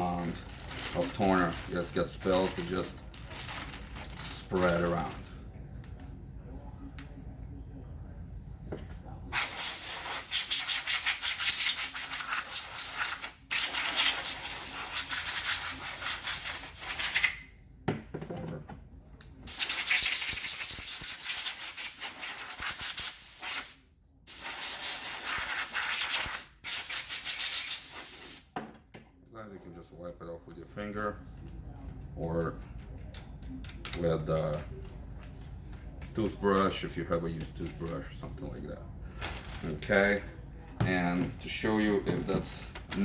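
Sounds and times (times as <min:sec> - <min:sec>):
compressed air hissing: 0:09.3 - 0:17.4, 0:19.5 - 0:28.5.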